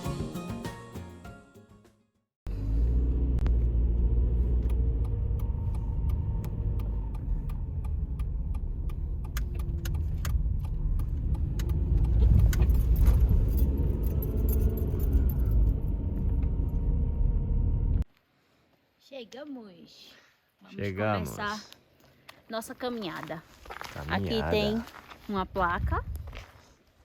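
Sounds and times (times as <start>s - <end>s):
car engine rumbling: 2.5s - 18.1s.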